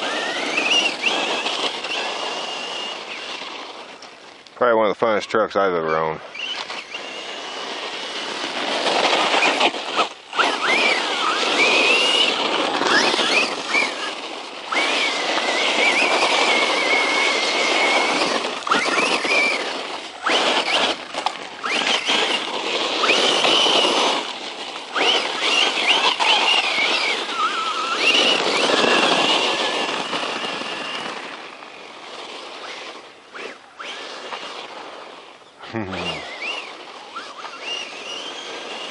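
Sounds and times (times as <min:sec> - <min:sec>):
electric motor whining: 0:00.0 - 0:04.4, 0:05.2 - 0:38.9
broad rushing noise: 0:00.0 - 0:38.9.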